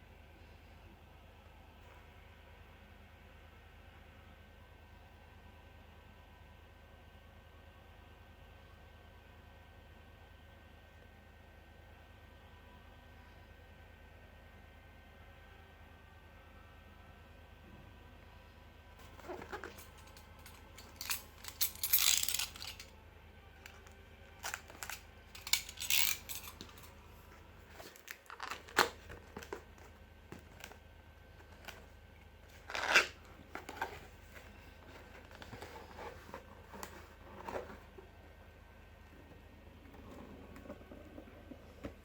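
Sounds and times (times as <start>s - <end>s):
packaging rustling and tearing: 19.0s - 22.9s, 23.7s - 27.0s, 27.6s - 30.8s, 32.5s - 37.8s.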